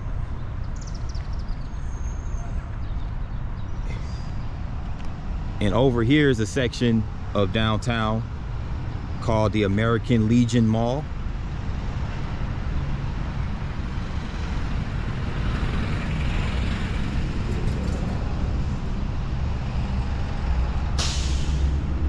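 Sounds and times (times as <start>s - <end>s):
traffic engine rumble and tyres: 0.0s - 22.0s
air brakes hissing: 21.0s - 21.8s.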